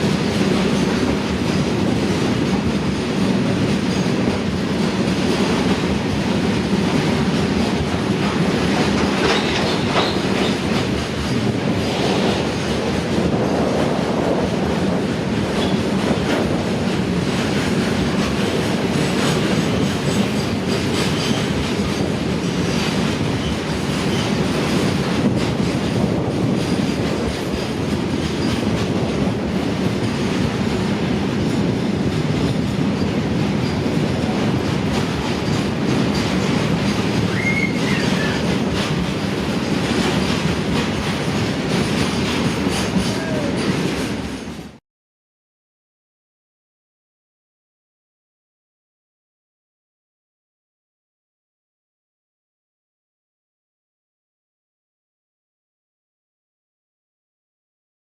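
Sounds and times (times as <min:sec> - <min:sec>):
wheels clicking over rail joints: 0:00.0 - 0:44.7
freight train rolling past: 0:00.0 - 0:44.8.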